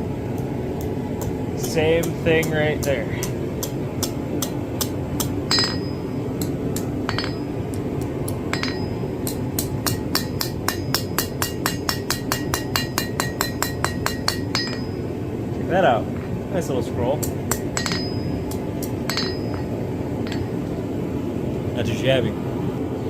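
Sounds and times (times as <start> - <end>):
hammer striking iron on anvil: 1.2 - 15.1, 17.2 - 20.6.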